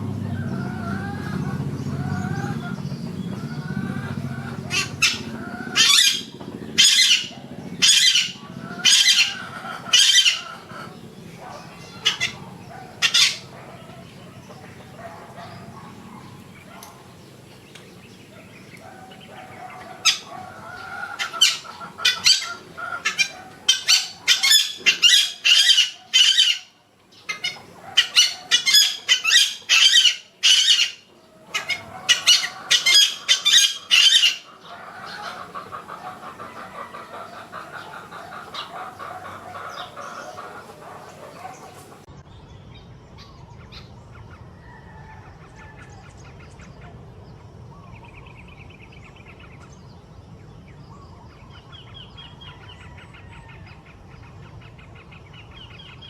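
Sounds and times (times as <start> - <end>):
bird giving sharp calls: 0.0 - 17.2, 18.8 - 42.1.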